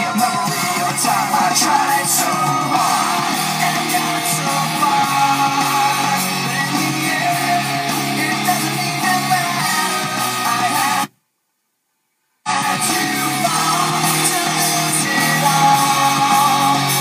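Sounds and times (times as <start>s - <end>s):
guitar music on car speakers: 0.0s - 11.0s.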